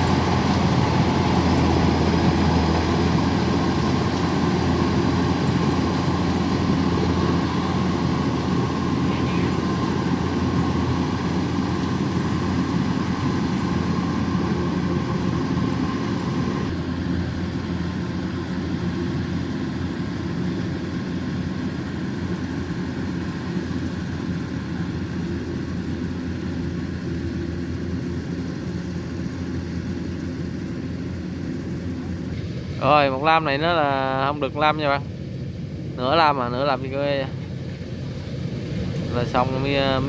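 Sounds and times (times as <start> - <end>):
higher whine: 0.0 - 27.5, 38.4 - 40.0
combine harvester diesel engine: 0.0 - 40.0.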